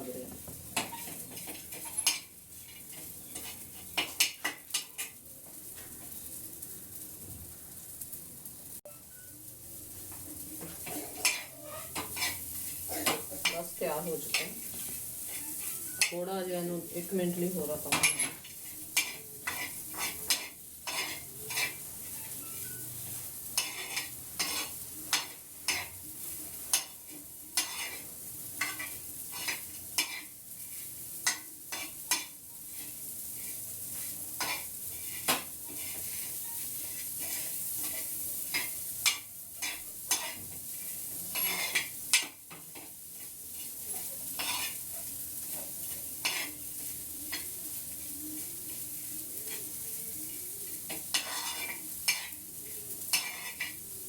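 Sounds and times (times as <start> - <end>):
sizzling hiss: 0.0 - 54.0
utensil scraping on a griddle: 0.8 - 7.0, 10.0 - 54.0.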